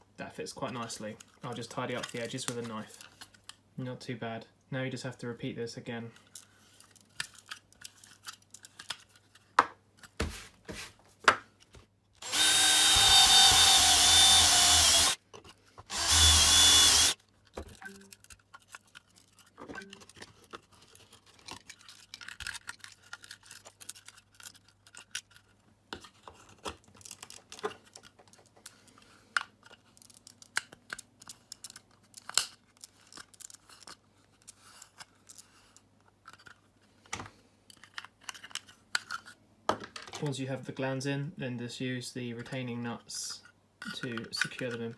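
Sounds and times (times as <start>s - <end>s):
clicks and scrapes of handling: 0.6s - 3.6s, 6.2s - 11.0s, 17.2s - 39.4s, 43.4s - 44.9s
power drill boring plastic: 12.2s - 15.2s, 15.9s - 17.2s.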